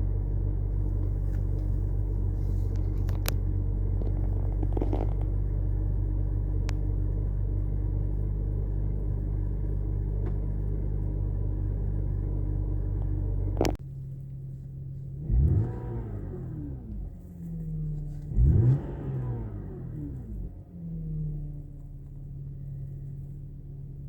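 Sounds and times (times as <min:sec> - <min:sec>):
low hum: 0:00.0 - 0:15.2
car engine idling: 0:00.0 - 0:24.0.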